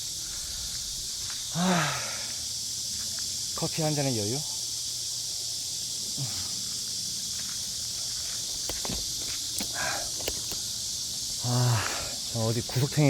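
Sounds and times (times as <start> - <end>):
insects droning: 0.0 - 13.0
small knocks and rustles: 7.4 - 11.3
footsteps: 8.2 - 10.6
short scuffle: 8.2 - 10.6.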